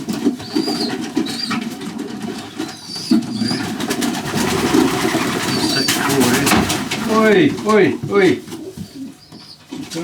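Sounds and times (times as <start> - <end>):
pigeons cooing: 0.0 - 7.1.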